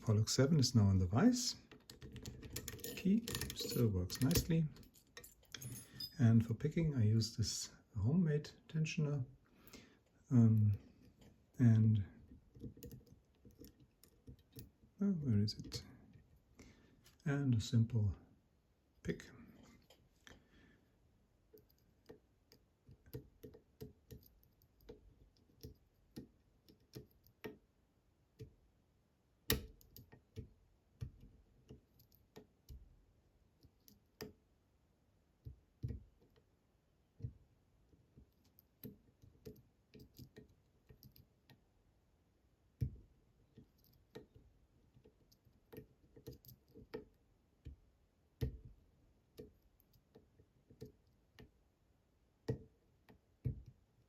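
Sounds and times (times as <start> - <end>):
lock pick clicking on pins: 1.6 - 6.3, 21.5 - 27.6, 29.5 - 32.9, 38.4 - 41.6, 45.0 - 47.8.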